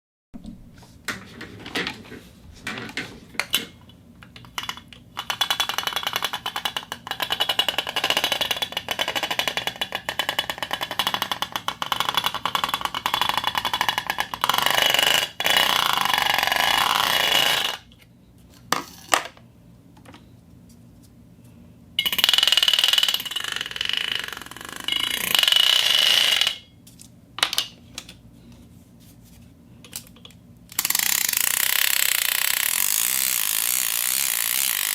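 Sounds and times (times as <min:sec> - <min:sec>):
fishing reel ratchet clicking: 0:04.6 - 0:17.8, 0:22.0 - 0:26.6, 0:30.7 - 0:34.9
reel whirring with ringing tone: 0:22.0 - 0:26.8.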